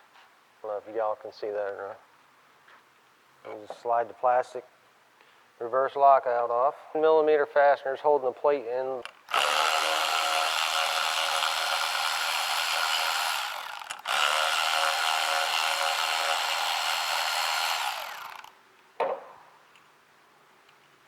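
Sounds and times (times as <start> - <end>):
power drill running: 9.3 - 18.6
short knock: 19.0 - 19.4.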